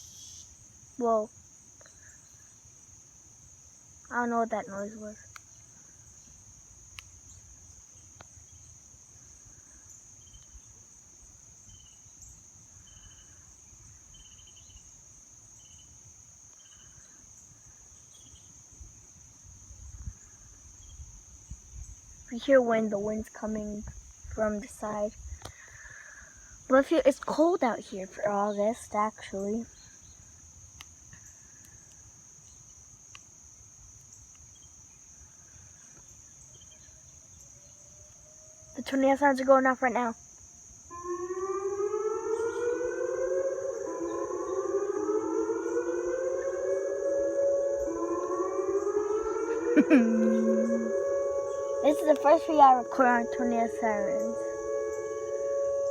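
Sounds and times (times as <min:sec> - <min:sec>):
crickets trilling: 0:00.0 - 0:55.9
insect chirps: 0:00.0 - 0:55.9
wind rumble on microphone: 0:19.6 - 0:22.3, 0:23.0 - 0:25.5.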